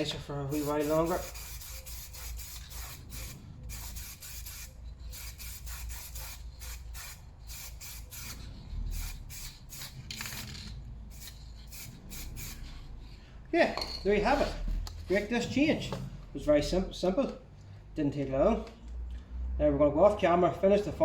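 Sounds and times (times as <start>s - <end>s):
aerosol can spraying: 0.5s - 12.8s.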